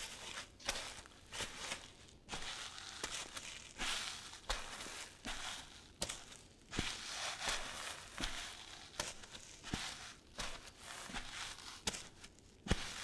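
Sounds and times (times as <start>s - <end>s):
bare footsteps on sand: 0.0s - 13.0s.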